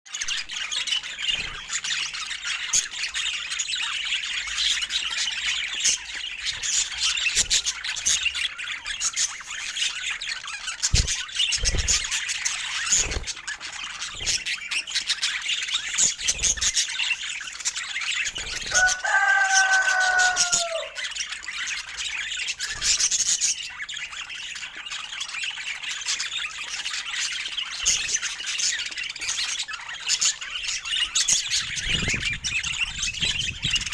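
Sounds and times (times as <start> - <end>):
budgerigars chirping and chattering: 0.1 - 33.9
long low bird call: 18.7 - 21.0.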